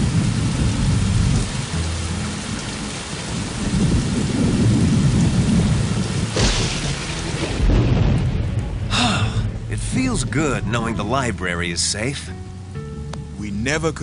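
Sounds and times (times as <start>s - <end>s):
rolling thunder: 0.0s - 1.6s, 3.3s - 11.3s
heavy rain: 0.0s - 14.0s
thunder crack: 3.6s - 11.1s.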